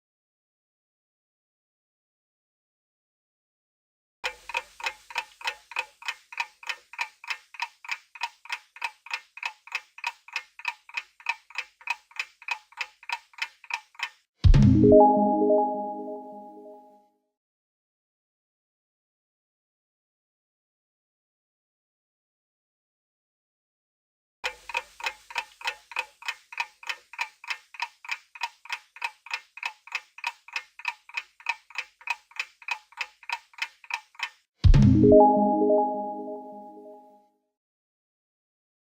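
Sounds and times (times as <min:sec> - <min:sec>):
clock ticking timer: 0:04.2 - 0:14.3, 0:24.4 - 0:35.2
countdown timer ticking: 0:14.5 - 0:16.8, 0:34.8 - 0:37.0
ringing chord: 0:14.8 - 0:16.9, 0:35.0 - 0:37.1.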